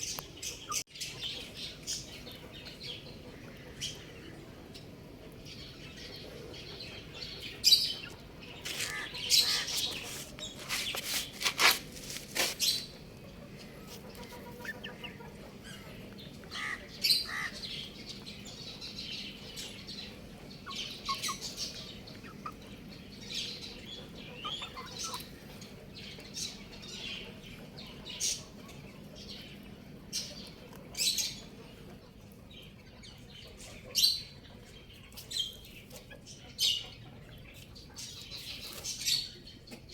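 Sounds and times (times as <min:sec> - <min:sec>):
chicks peeping: 0:00.0 - 0:39.9
sharp clicks and rustles: 0:09.6 - 0:12.8.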